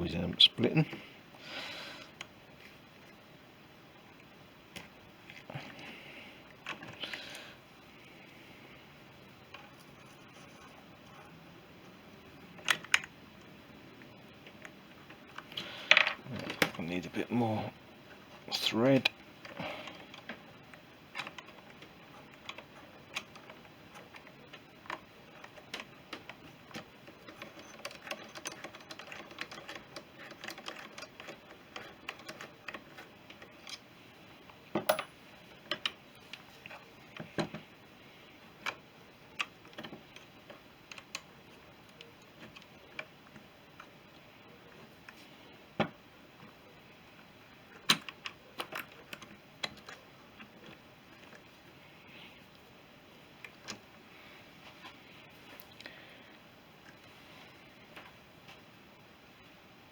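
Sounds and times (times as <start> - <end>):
metallic clicks of tools and parts: 34.8 - 35.9.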